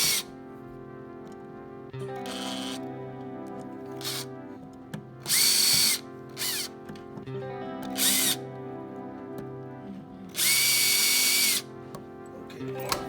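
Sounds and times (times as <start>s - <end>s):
power drill driving screws: 0.0s - 0.3s, 2.2s - 2.8s, 3.9s - 4.3s, 5.2s - 6.7s, 8.0s - 8.4s, 10.3s - 11.6s
background music: 0.0s - 13.0s.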